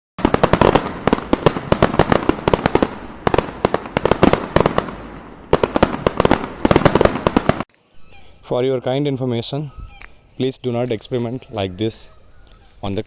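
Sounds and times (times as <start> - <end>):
firecrackers banging: 0.2 - 7.7.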